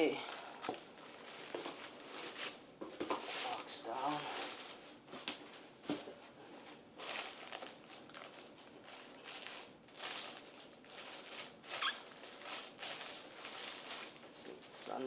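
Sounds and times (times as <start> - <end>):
packaging rustling and scraping: 0.3 - 15.0.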